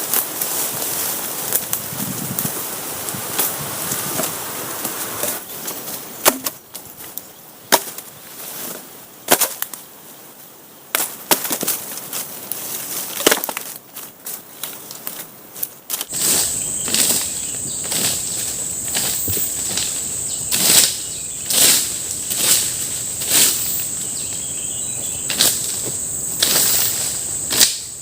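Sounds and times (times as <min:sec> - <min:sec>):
wood chopping strikes: 0:06.2 - 0:06.6.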